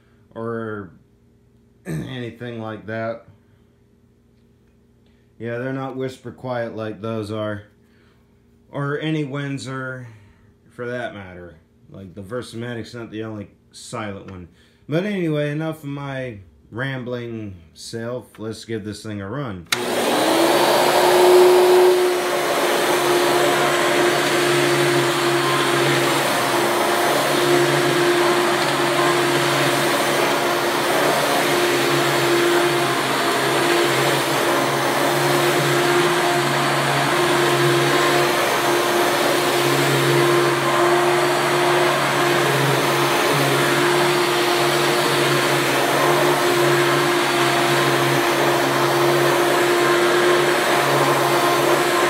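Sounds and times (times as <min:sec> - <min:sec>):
vacuum cleaner running: 0:19.7 - 0:52.0.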